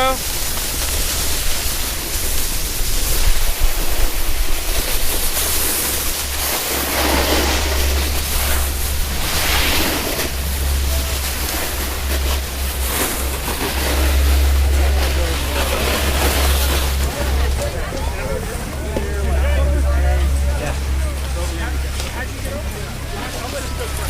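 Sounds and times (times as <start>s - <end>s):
snowboard scraping icy snow: 0.0s - 17.5s
wind rumbling over microphone: 0.0s - 20.9s.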